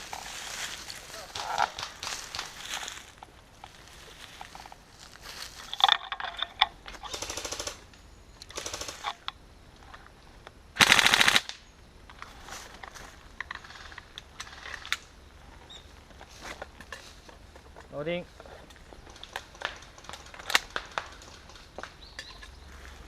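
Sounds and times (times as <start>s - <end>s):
airsoft guns firing bursts: 7.1s - 7.8s, 8.6s - 9.1s, 10.8s - 11.5s.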